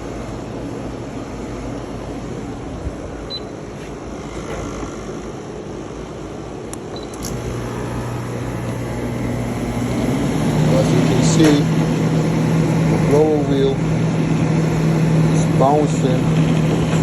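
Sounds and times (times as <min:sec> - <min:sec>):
air conditioner running loudly: 0:00.0 - 0:17.0
steady low hum: 0:00.0 - 0:17.0
blower wheel bouncing: 0:07.2 - 0:17.0.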